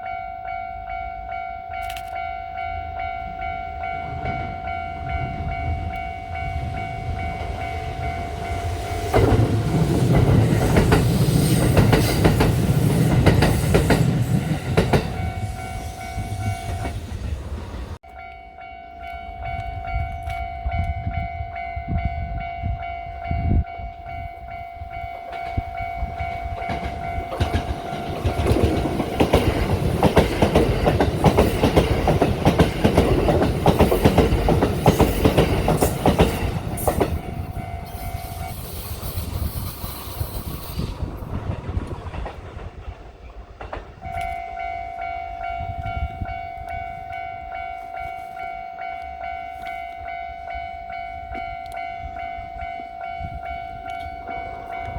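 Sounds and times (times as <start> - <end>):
crossing warning bell ringing: 0.0 - 17.2, 18.0 - 41.0, 44.0 - 54.9
train wheels clattering over rail joints: 7.2 - 18.0, 25.3 - 45.0.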